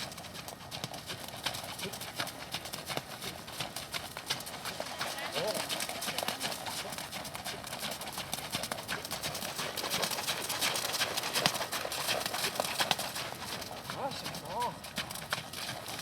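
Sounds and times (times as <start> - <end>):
horse hoofbeats: 0.0 - 16.0.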